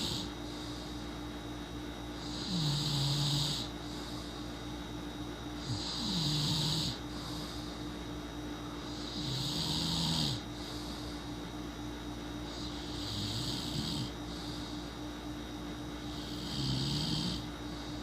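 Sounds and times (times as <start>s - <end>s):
person snoring: 0.0s - 1.0s, 2.1s - 4.4s, 5.6s - 7.9s, 8.8s - 11.3s, 12.4s - 15.0s, 16.0s - 18.0s.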